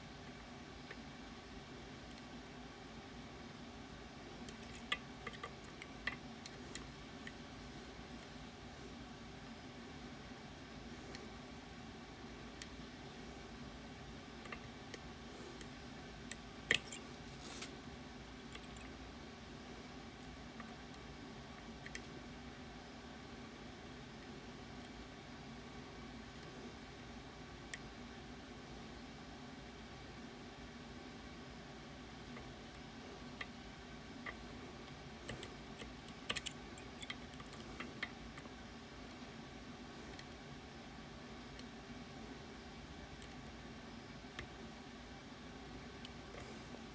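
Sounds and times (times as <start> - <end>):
lock clicking with small tools: 4.5 - 6.9, 16.3 - 17.0, 18.3 - 19.0, 34.3 - 38.2.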